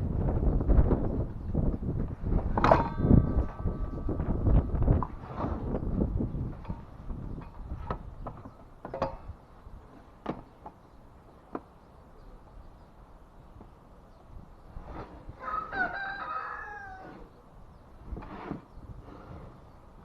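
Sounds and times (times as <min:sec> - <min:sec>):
rooster crowing: 0:15.4 - 0:17.3.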